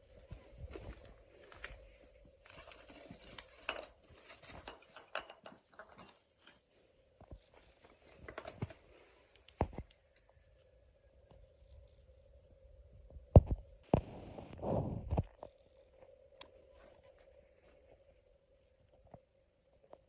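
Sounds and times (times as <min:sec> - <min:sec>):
footsteps crunching over broken glass: 0:00.8 - 0:06.6
small clinks and knocks: 0:01.5 - 0:08.8.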